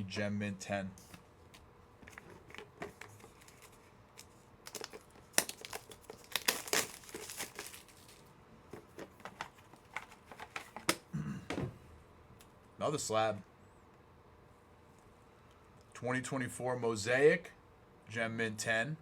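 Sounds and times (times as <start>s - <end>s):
plastic crinkling and rustling: 2.0s - 11.0s.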